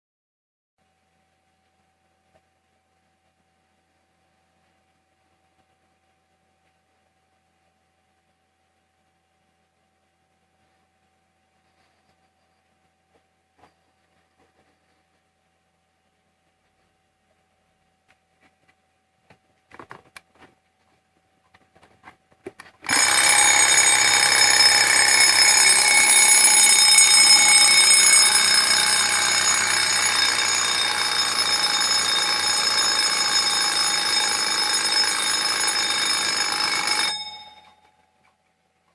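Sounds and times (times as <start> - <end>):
alarm clock bell ringing: 22.8 - 37.9.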